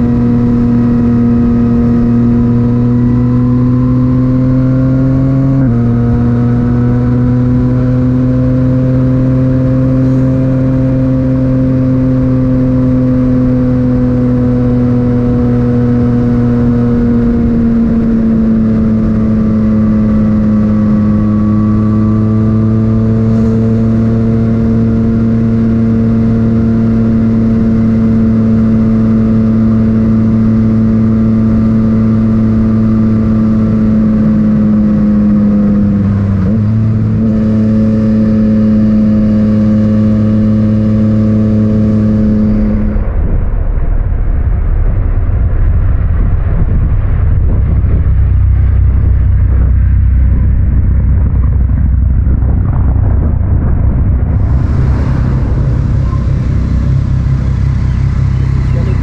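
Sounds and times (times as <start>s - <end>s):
motorcycle engine running: 46.6s - 59.0s.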